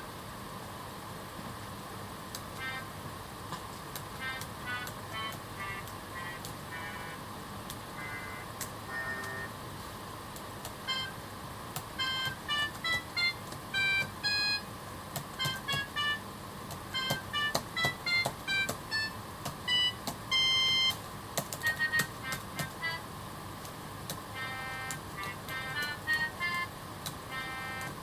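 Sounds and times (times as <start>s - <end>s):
computer keys clicking: 3.6s - 6.6s, 11.8s - 14.2s, 15.1s - 23.0s, 24.8s - 28.0s
synthesized notes melody: 4.2s - 7.3s, 8.0s - 9.6s, 10.8s - 11.2s, 12.0s - 14.7s, 15.4s - 16.3s, 16.9s - 21.0s, 21.6s - 23.1s, 24.3s - 28.0s.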